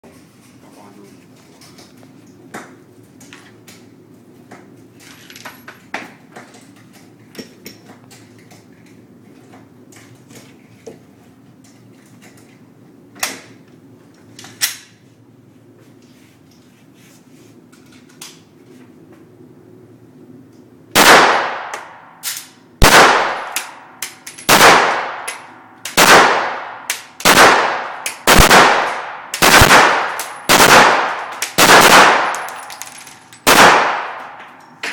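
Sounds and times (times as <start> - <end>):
pistol shots: 21.0 - 22.0, 22.8 - 23.8, 24.4 - 34.4.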